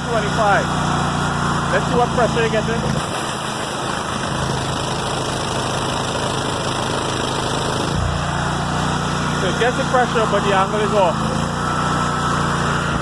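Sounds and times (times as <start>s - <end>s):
pressure washer engine running: 0.0s - 13.0s
pressure washer water hiss: 0.2s - 5.1s.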